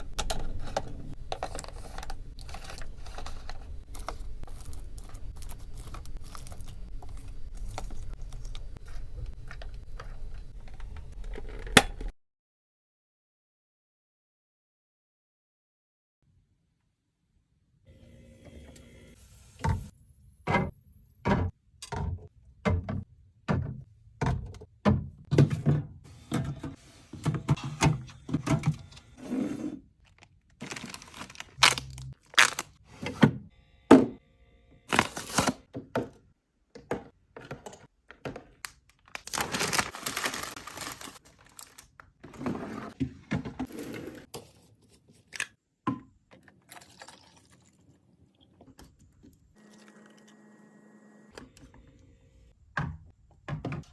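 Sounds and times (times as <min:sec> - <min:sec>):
packaging rustling: 0:30.0 - 0:32.8, 0:34.9 - 0:35.6, 0:38.8 - 0:42.3.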